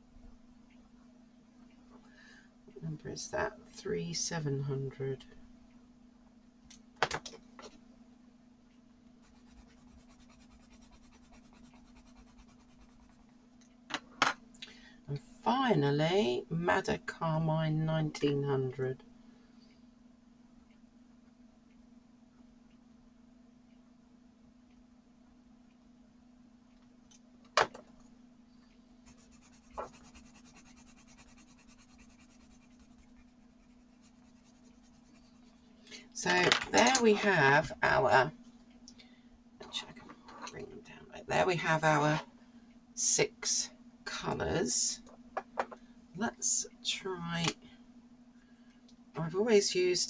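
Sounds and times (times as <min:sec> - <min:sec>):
low steady hum: 0:00.0 - 0:50.0
colouring tool scratching paper: 0:09.2 - 0:13.2, 0:29.0 - 0:35.5.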